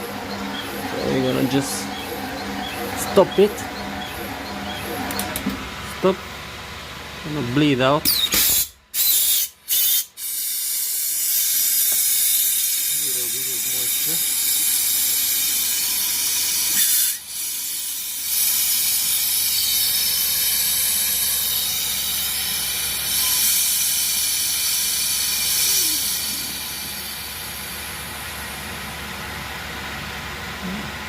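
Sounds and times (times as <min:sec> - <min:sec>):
high-pressure air hissing: 0:08.3 - 0:27.9.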